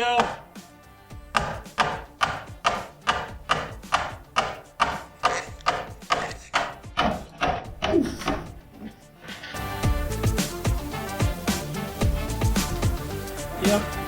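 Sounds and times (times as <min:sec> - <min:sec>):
hand saw cutting conduit: 0:01.4 - 0:08.4.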